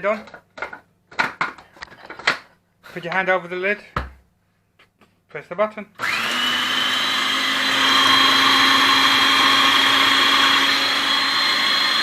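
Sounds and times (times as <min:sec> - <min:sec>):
electric blender motor running: 0:06.0 - 0:12.0.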